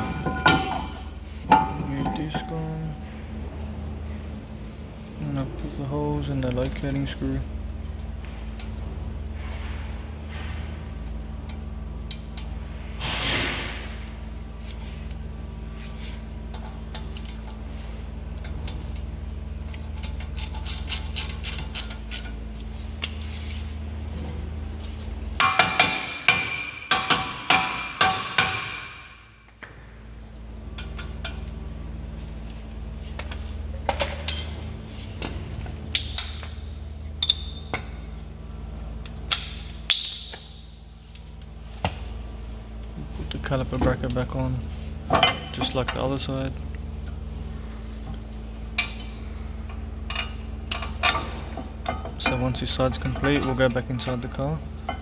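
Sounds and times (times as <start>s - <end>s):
steady low hum: 0.0s - 55.0s
metal tools clinking and tapping: 33.9s - 34.9s, 37.2s - 37.9s.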